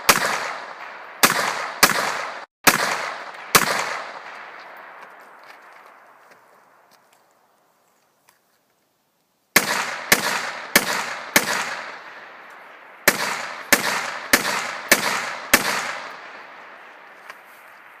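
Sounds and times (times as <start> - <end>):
rifle shots echoing: 0.0 - 5.2, 9.6 - 17.1.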